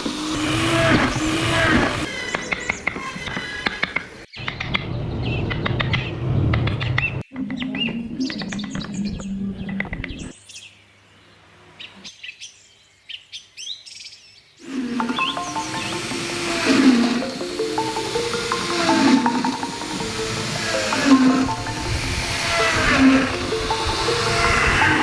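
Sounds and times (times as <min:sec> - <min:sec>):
birds chirping: 0:14.7 - 0:25.0.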